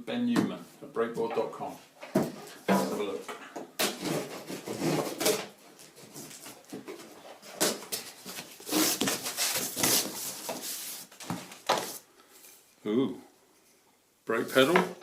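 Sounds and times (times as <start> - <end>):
packaging rustling and crinkling: 5.9 - 12.0.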